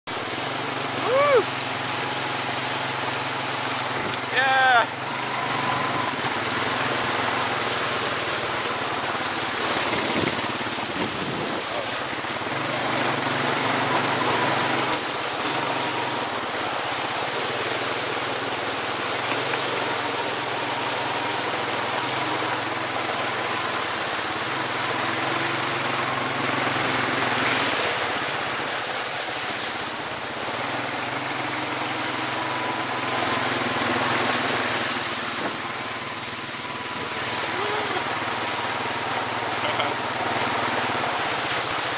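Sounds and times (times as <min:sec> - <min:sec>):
faint engine whine: 0:00.1 - 0:41.9
wind noise on microphone: 0:09.9 - 0:11.7.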